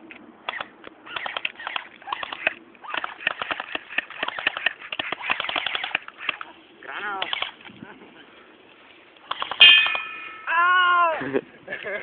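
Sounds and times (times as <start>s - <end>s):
airsoft guns firing: 0.5s - 6.4s, 9.3s - 10.1s.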